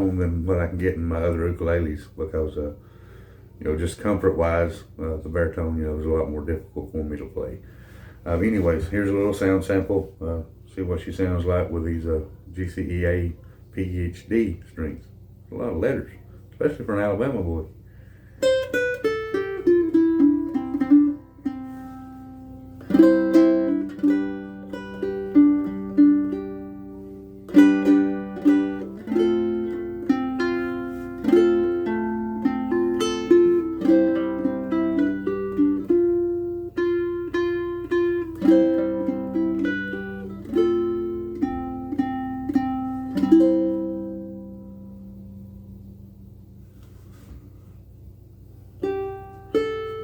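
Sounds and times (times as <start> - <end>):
ukulele plucked melody with chords: 18.4 - 45.8, 48.8 - 50.0.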